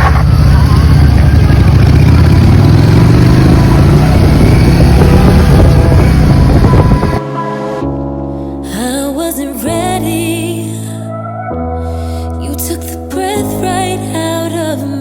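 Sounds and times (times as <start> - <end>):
motorcycle engines revving: 0.0 - 7.8.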